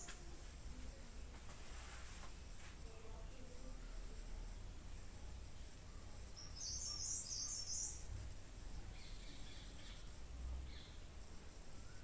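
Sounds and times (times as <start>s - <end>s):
small birds chirping: 6.3s - 8.1s.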